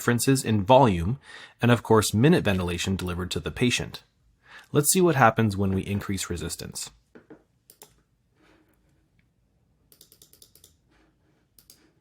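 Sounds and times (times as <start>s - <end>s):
computer keyboard typing clicks: 7.7s - 8.0s, 9.9s - 10.8s, 11.6s - 11.9s.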